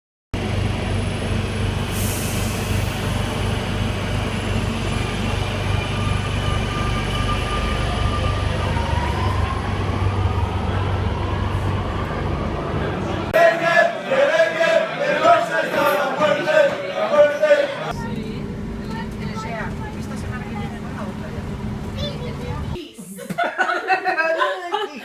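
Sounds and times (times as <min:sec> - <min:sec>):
voices singing or chanting: 0:12.9 - 0:18.3
vehicle engine rumble: 0:17.9 - 0:22.8.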